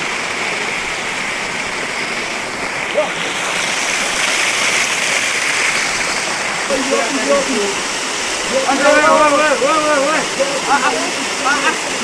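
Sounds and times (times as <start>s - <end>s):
waterfall roaring: 0.0s - 12.0s.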